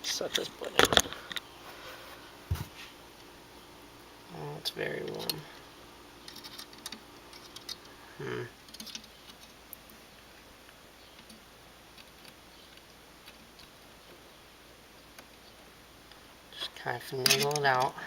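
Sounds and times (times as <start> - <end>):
person murmuring: 8.0 - 8.6.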